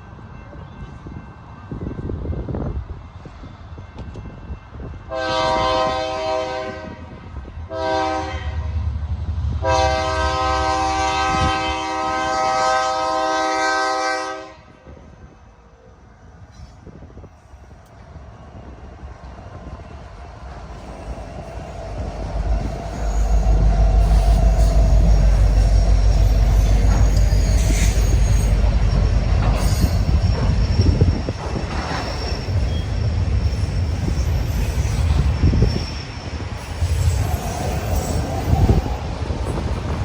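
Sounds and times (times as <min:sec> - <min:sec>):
low rumble of approaching train: 0:00.0 - 0:40.0
locomotive air horn blasts: 0:05.1 - 0:07.1, 0:07.7 - 0:08.8, 0:09.6 - 0:14.8.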